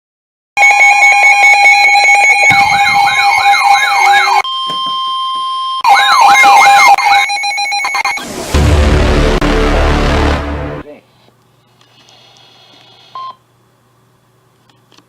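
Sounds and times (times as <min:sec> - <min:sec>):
siren yelp sweeping upward: 0:00.6 - 0:04.4, 0:05.8 - 0:07.3
steady siren tone: 0:00.6 - 0:10.8
rapid pulsing siren tone: 0:01.0 - 0:04.4.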